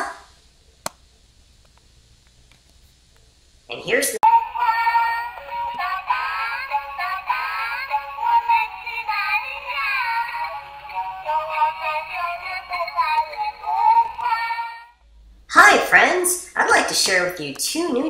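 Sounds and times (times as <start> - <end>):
tinny electronic children's tune: 4.2 - 15.0.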